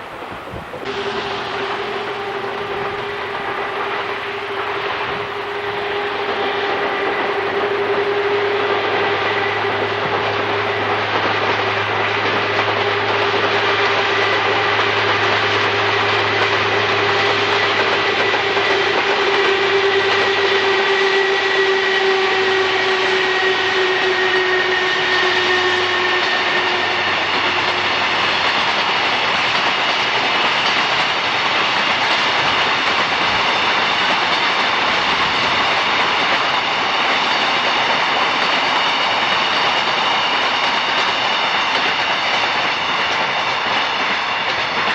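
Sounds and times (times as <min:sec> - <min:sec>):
steady rushing noise: 0:00.0 - 0:44.9
train wheels clattering: 0:00.0 - 0:44.9
steady whine sinking in pitch: 0:00.8 - 0:30.7.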